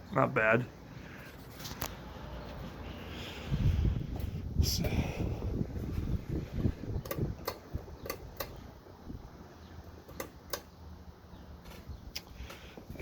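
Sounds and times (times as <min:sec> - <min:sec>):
ceiling fan air rush: 0:00.4 - 0:13.0
sharp ticks: 0:07.0 - 0:08.6.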